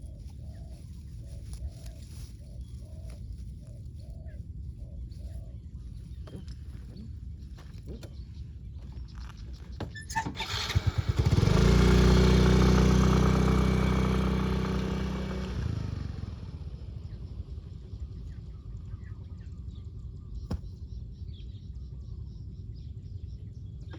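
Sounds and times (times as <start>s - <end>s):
small engine running: 9.8s - 18.5s.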